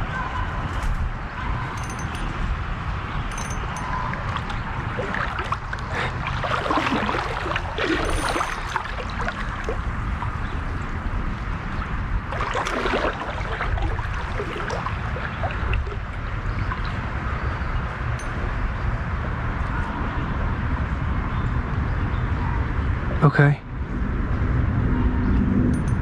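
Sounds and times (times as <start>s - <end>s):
creek water running: 3.0s - 19.4s
fish splashing in water: 3.4s - 10.8s, 11.8s - 18.6s.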